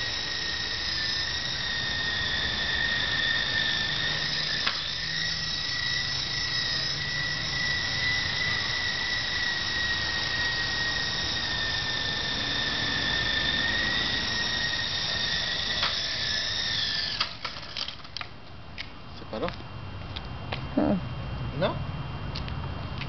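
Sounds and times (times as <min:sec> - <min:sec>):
helicopter rotors whirring: 0:00.0 - 0:18.2
electric motor whine: 0:00.0 - 0:18.3.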